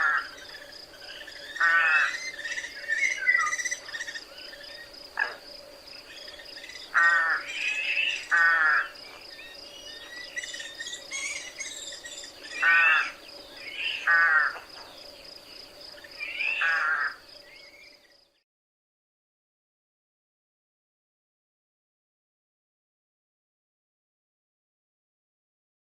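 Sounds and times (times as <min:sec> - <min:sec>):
rook cawing: 0:00.0 - 0:00.7, 0:01.4 - 0:04.2, 0:06.8 - 0:09.0, 0:12.4 - 0:14.7, 0:16.2 - 0:17.3
small birds chirping: 0:00.0 - 0:18.4.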